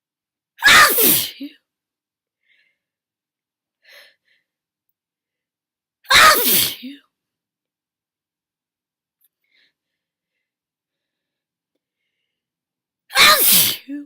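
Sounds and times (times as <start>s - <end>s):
person sneezing: 0.6s - 1.4s, 6.1s - 7.0s, 13.1s - 14.0s.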